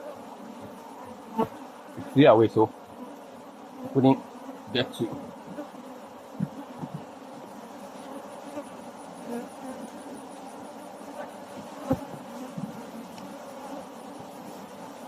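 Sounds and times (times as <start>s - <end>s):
bees buzzing: 0.0s - 15.0s.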